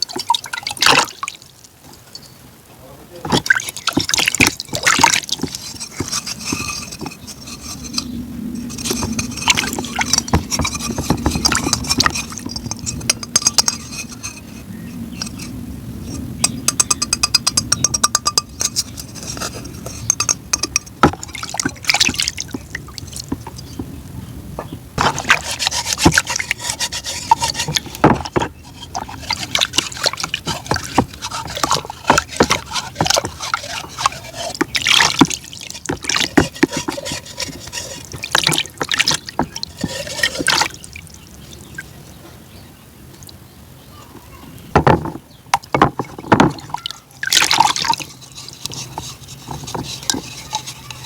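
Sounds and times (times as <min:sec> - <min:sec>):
wet crunching and chewing: 0:27.4 - 0:41.9.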